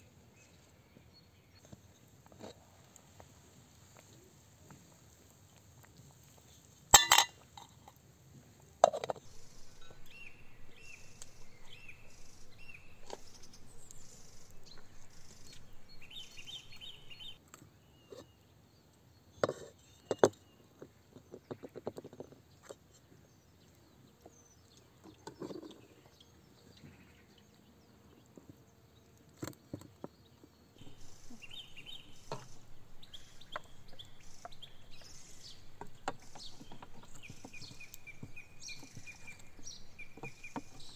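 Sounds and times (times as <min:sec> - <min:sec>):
birds chirping: 0:09.2 - 0:18.4, 0:30.1 - 0:40.9.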